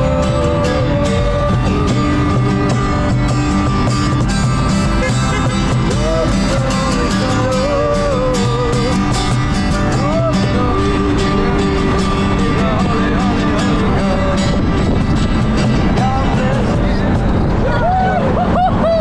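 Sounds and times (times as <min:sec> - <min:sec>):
person singing: 0:00.0 - 0:02.8, 0:05.8 - 0:14.8
guitar accompaniment: 0:00.0 - 0:19.0.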